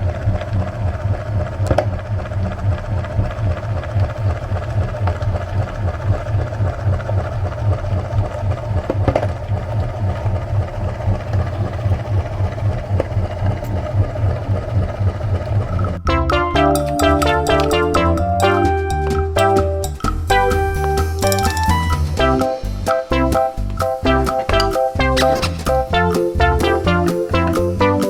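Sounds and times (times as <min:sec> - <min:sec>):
meat grinder motor rattling: 0:00.0 - 0:16.0.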